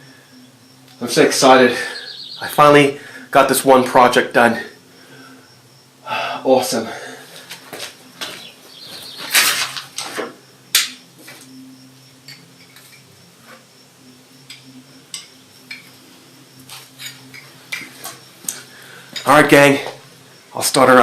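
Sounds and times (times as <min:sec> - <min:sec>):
faint steady hum: 0:00.0 - 0:21.0
metal objects clinking and knocking: 0:12.2 - 0:13.6, 0:14.4 - 0:16.0, 0:16.9 - 0:18.2.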